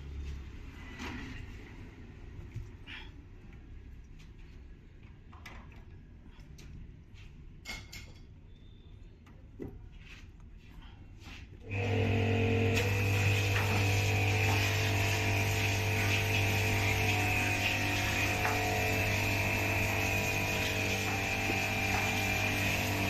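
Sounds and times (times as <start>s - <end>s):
electric motor humming: 11.7s - 23.0s.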